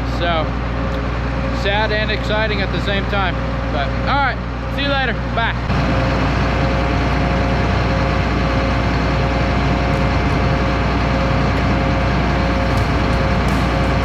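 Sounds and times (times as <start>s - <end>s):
tractor engine running: 5.7s - 14.0s.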